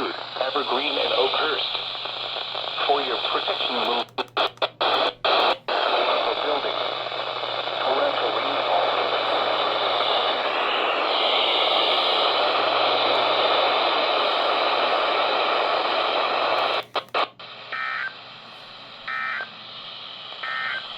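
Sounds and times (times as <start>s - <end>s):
radio static hiss: 0.0s - 20.9s
digital data tone bursts: 20.4s - 20.9s.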